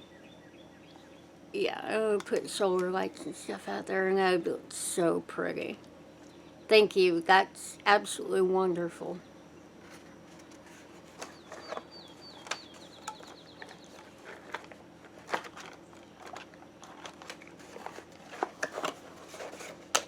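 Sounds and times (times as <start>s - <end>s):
items and cardboard box rustling: 9.8s - 20.0s
bird chirping and trilling: 11.2s - 14.1s.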